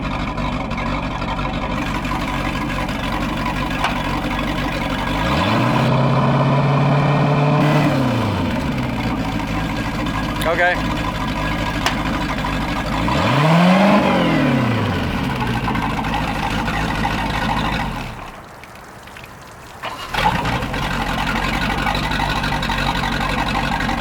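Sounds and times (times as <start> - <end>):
boat engine running: 0.0 - 18.4, 19.8 - 24.0
sharp engine knock: 1.8 - 5.9, 8.8 - 13.5.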